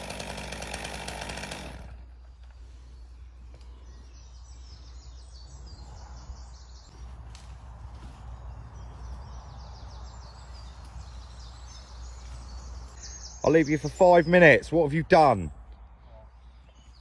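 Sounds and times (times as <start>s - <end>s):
small birds chirping: 2.2s - 7.2s, 8.2s - 17.0s.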